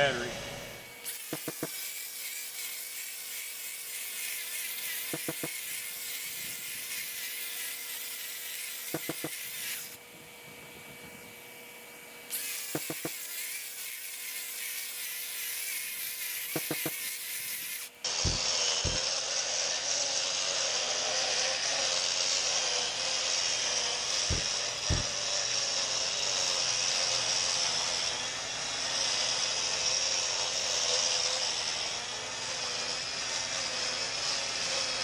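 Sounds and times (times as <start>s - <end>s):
grinder grinding concrete: 0.0s - 35.0s
dust vacuum running: 18.1s - 30.3s.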